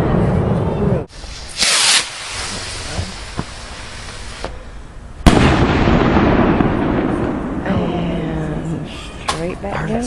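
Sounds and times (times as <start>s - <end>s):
firework bang: 1.1s - 4.6s, 5.2s - 8.1s.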